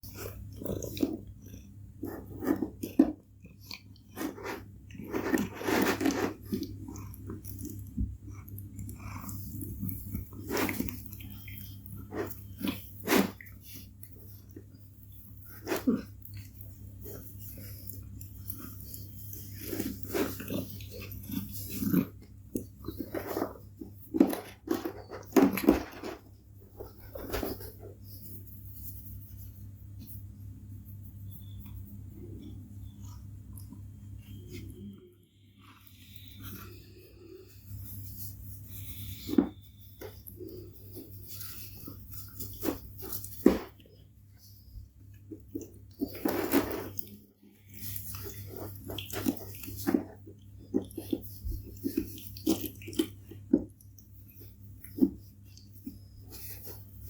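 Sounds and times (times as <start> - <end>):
scratchy rustling: 4.1 - 7.1, 7.7 - 32.1, 37.4 - 44.8.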